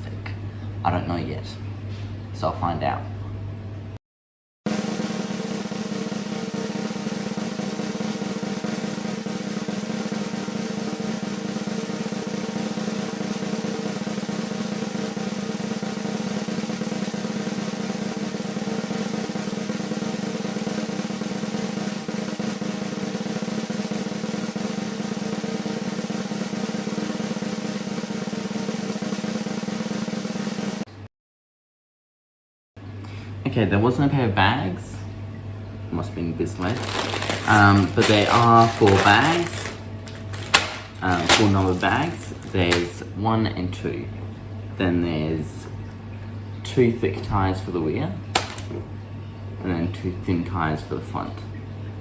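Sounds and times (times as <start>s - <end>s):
rapid snare drum roll: 4.7s - 11.0s.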